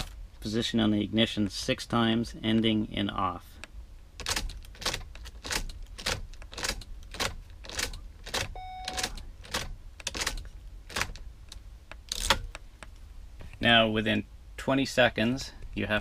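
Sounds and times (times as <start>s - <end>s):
ignition key clicking: 4.2s - 11.2s
short electronic beep: 8.6s - 9.2s.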